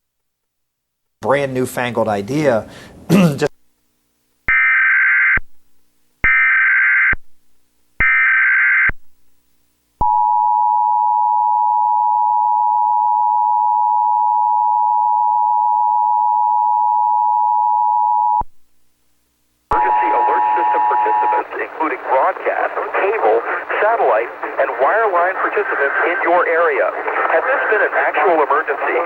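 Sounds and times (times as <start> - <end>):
modem-like data tone bursts: 19.7 - 26.3.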